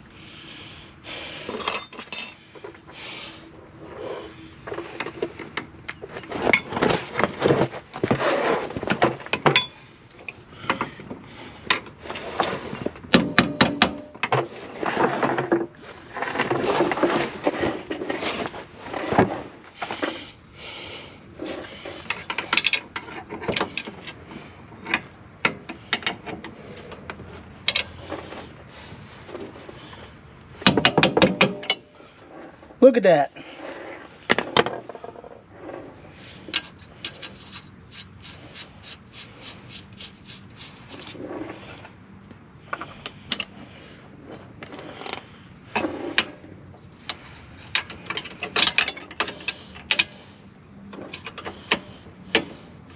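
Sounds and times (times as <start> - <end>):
metallic clicks and clanks of tools: 1.5 - 2.4, 42.7 - 43.7, 47.1 - 50.2.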